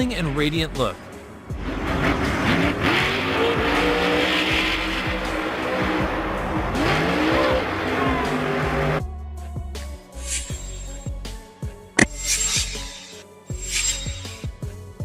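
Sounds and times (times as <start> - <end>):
background music: 0.0 - 15.0
monster truck engine revving: 1.6 - 9.0.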